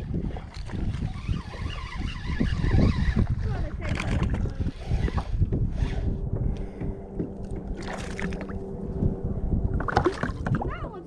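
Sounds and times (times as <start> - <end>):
microphone handling noise: 0.0 - 10.7
water sloshing and gurgling: 0.0 - 11.0
wind rumble on microphone: 0.0 - 11.0
water splash: 7.8 - 8.6, 9.8 - 10.7.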